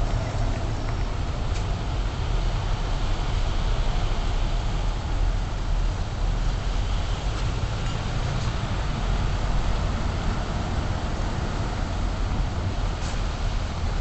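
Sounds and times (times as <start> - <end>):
low hum: 0.0 - 3.2.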